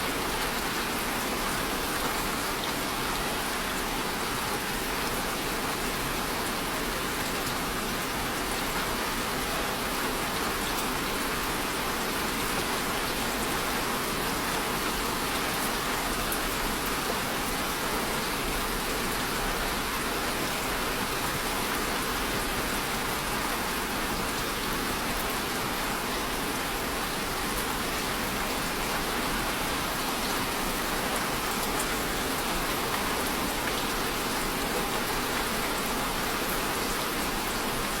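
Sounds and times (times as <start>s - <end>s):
steady rain falling: 0.0s - 38.0s.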